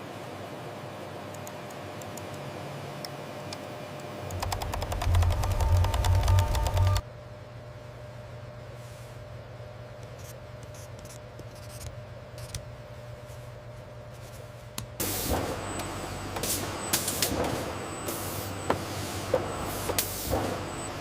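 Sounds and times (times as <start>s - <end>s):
machinery hum: 0.0s - 21.0s
mechanical clicks and knocks: 4.3s - 7.0s
machine hissing: 15.0s - 21.0s.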